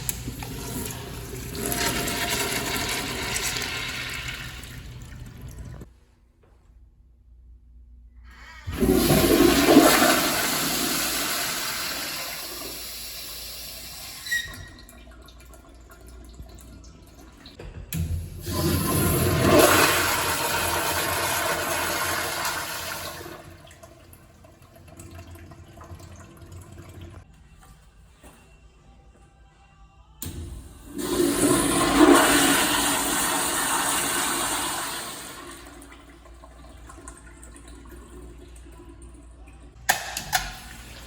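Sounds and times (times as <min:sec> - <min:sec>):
toilet flushing: 0:00.0 - 0:05.9, 0:08.3 - 0:27.3, 0:30.7 - 0:41.0
toilet tank refilling: 0:00.0 - 0:05.9, 0:08.4 - 0:27.3, 0:30.7 - 0:41.0.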